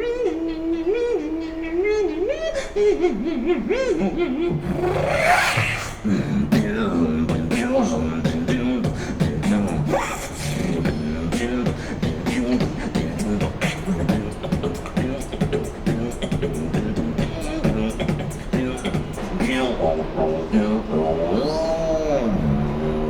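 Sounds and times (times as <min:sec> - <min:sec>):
beatboxing clicks and hisses: 0:04.5 - 0:22.1
rising vocal sweep: 0:04.5 - 0:23.0.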